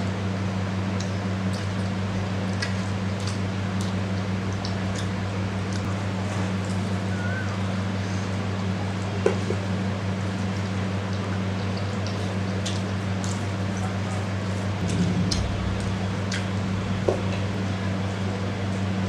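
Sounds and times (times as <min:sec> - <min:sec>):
low hum and hiss: 0:00.0 - 0:19.0
wet clicks and squishes of eating: 0:00.8 - 0:07.6, 0:08.9 - 0:14.6.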